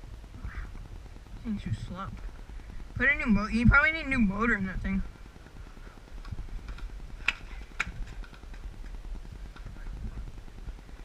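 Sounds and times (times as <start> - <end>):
low rumble: 0.0 - 11.0
faint ticks: 5.6 - 11.0
sharp clicks: 6.2 - 9.7.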